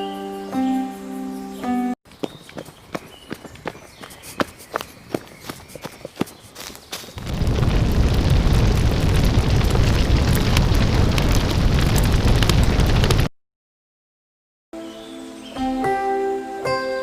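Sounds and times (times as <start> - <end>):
dense rumbling roar: 7.2 - 13.3.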